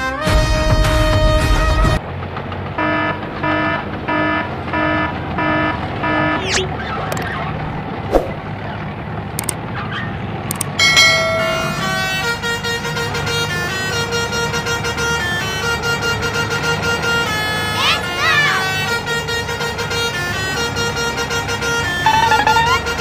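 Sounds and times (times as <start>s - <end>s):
truck engine rumble: 2.0s - 23.0s
clicks: 9.4s - 9.6s, 10.5s - 10.8s
multi-tone horn tune: 11.4s - 17.8s, 18.4s - 23.0s.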